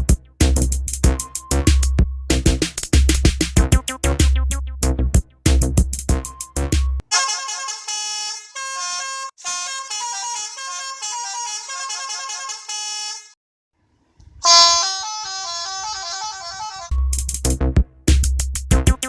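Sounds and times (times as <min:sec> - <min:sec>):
bus musical horn tune: 0:07.0 - 0:13.4, 0:14.4 - 0:17.1.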